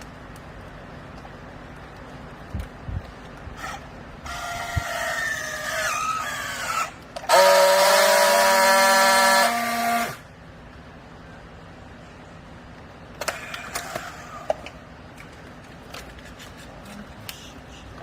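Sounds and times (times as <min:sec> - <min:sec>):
hydraulic baler whine: 0:03.6 - 0:10.3
loud horn-like tone: 0:07.3 - 0:10.2.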